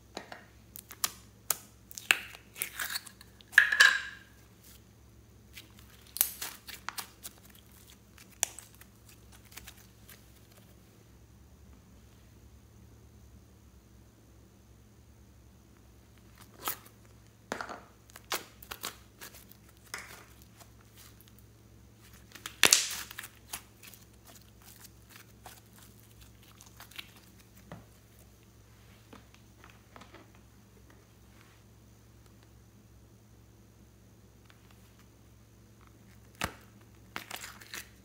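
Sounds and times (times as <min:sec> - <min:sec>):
crinkling and tearing crackles: 0:05.5 - 0:10.8, 0:18.1 - 0:21.4, 0:22.0 - 0:28.4, 0:35.8 - 0:38.0.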